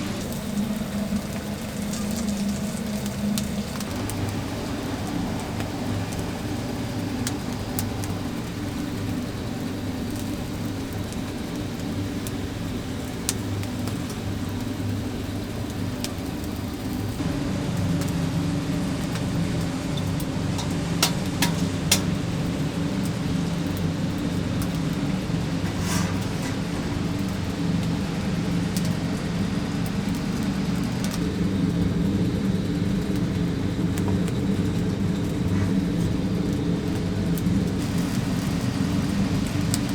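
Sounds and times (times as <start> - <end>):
low mechanical hum: 0.0 - 39.9
sharp clicks and crackles: 16.9 - 39.9.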